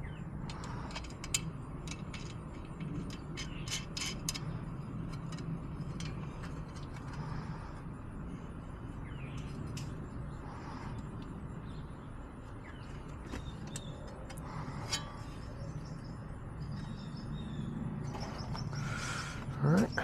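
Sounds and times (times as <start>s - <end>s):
steady low hum: 0.0s - 20.0s
clicks and knocks of fittings: 0.4s - 7.5s, 12.8s - 15.5s.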